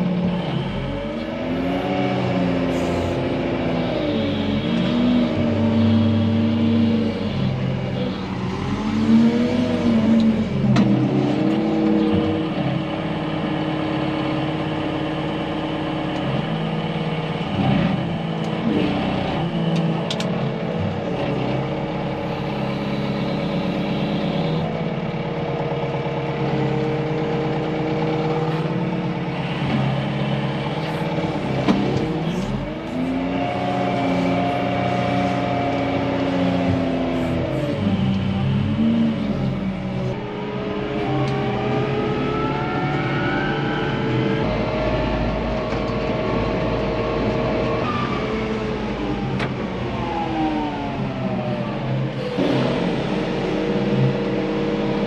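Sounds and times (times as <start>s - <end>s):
tractor engine revving: 0.0s - 55.0s.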